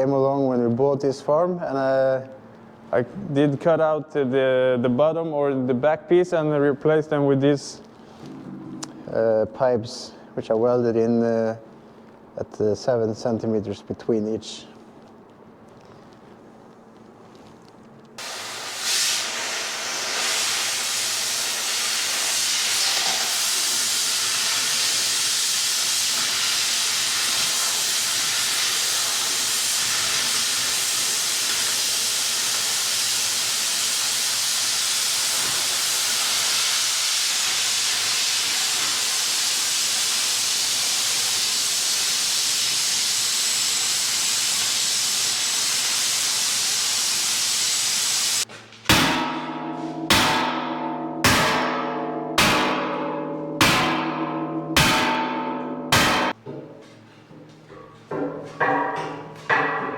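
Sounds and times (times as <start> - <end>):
cutting torch hissing: 18.2 - 48.5.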